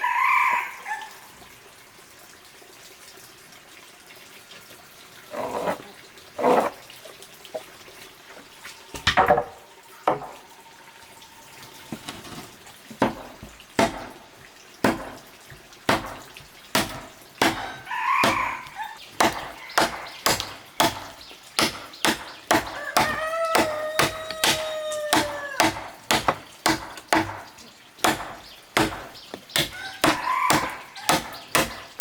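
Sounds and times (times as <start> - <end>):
water splashing: 11.3 - 32.0
sharp chopping strikes: 13.0 - 14.2, 14.8 - 15.2, 15.9 - 18.4, 19.2 - 32.0.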